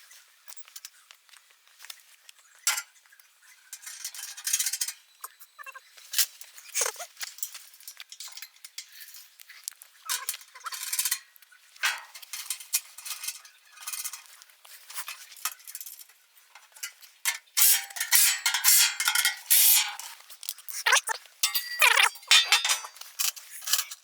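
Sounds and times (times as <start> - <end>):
metal tools clinking and scraping: 16.8 - 24.0.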